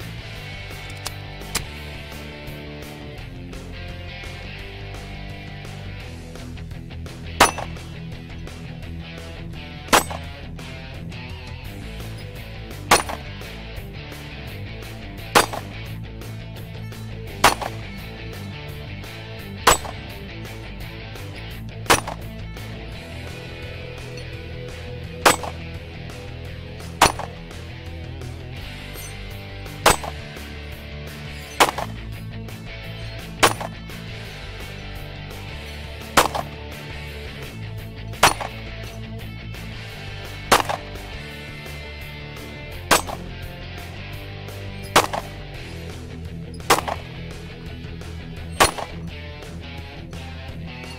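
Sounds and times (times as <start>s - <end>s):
handgun shots: 7.4s - 7.8s, 9.9s - 10.4s, 12.9s - 13.4s, 15.3s - 15.9s, 17.4s - 18.5s, 19.6s - 20.1s, 21.9s - 22.4s, 25.2s - 25.8s, 26.9s - 27.4s, 29.8s - 30.4s, 31.4s - 32.1s, 33.3s - 33.9s, 36.0s - 36.6s, 37.4s - 39.0s, 40.4s - 41.1s, 42.8s - 43.4s, 44.8s - 45.7s, 46.6s - 47.2s, 48.6s - 49.1s.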